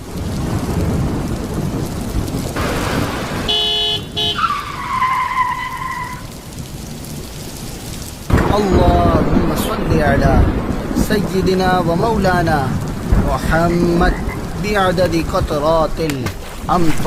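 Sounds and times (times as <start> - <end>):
heavy rain: 0.0 - 17.0
low thunder rumble: 0.0 - 17.0
horn-like tone: 3.5 - 4.5.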